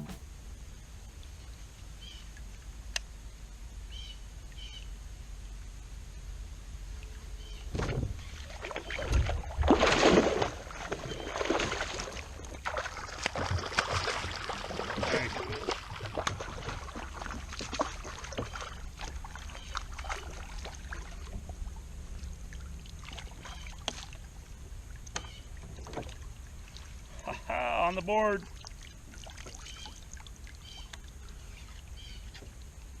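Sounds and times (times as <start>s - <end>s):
paddle splashing in water: 7.9s - 21.7s, 22.6s - 27.1s, 28.4s - 31.0s.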